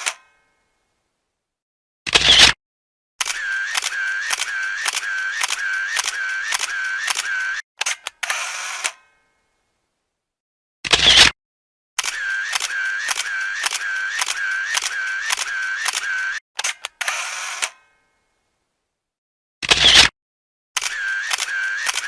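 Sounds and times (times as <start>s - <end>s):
camera shutter clicks: 3.2s - 9.0s, 12.0s - 17.8s, 20.8s - 22.0s.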